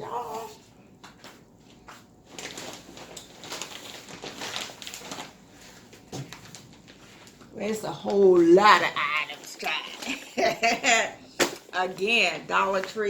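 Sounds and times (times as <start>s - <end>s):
bags and packaging crinkling: 1.9s - 13.0s.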